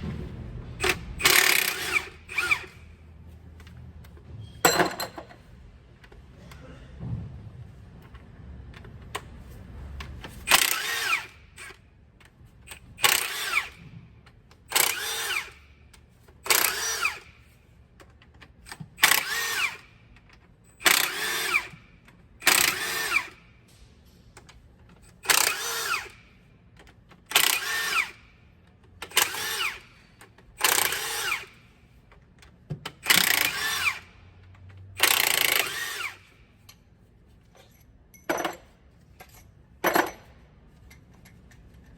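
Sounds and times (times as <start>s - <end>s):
power tool whirring bursts: 0.8s - 2.8s, 10.5s - 11.7s, 13.0s - 13.8s, 14.7s - 15.7s, 16.4s - 17.4s, 19.0s - 19.9s, 20.8s - 21.8s, 22.4s - 23.5s, 25.2s - 26.3s, 27.3s - 28.3s, 29.1s - 30.0s, 30.6s - 31.6s, 33.0s - 34.2s, 35.0s - 36.4s.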